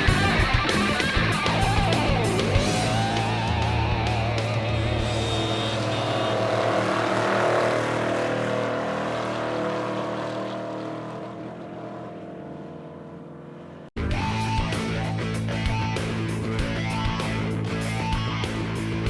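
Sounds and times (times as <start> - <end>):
race vehicle engine running: 0.0 - 19.0.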